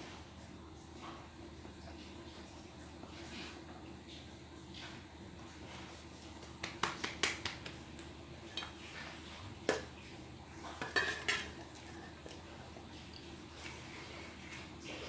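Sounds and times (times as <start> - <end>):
cutlery clinking on a plate: 10.8 - 11.6.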